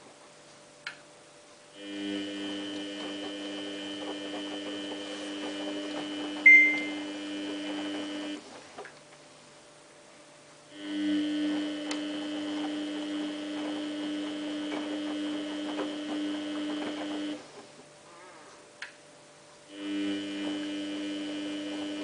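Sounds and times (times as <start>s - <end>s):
washing machine motor hum: 0.0s - 22.0s.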